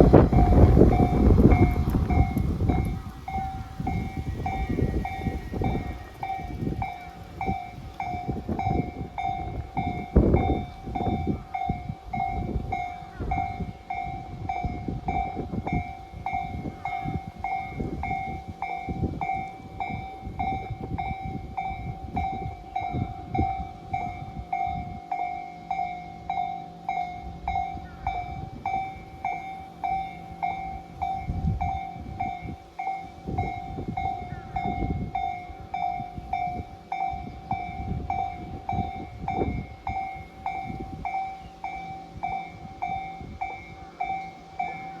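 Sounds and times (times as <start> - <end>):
level crossing warning bell: 0.0 - 45.0.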